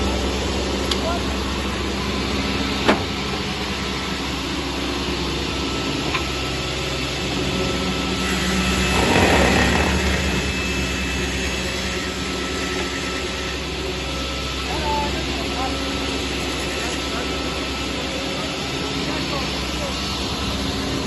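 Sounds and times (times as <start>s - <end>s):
saw cutting wood: 8.1s - 13.9s, 15.9s - 17.9s
rip saw humming: 8.2s - 13.7s.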